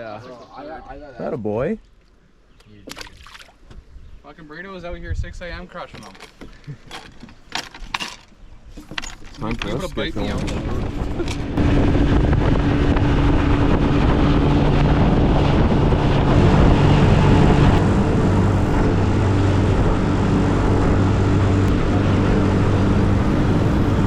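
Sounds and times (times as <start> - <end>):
water noise: 1.7 - 3.8, 9.2 - 24.0
wind noise: 4.8 - 5.6, 8.6 - 24.0
outboard engine running: 9.4 - 24.0.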